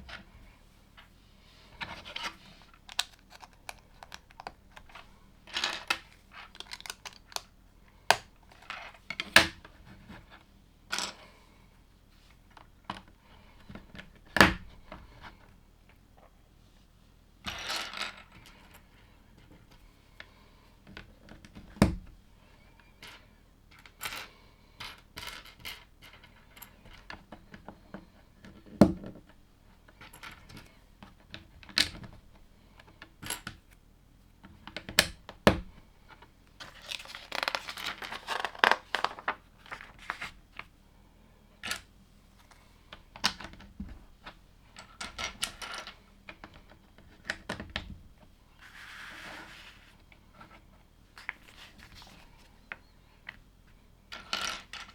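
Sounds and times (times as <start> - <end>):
plastic pieces clicking: 6.5 - 7.5
plastic pieces rattling: 36.7 - 39.3.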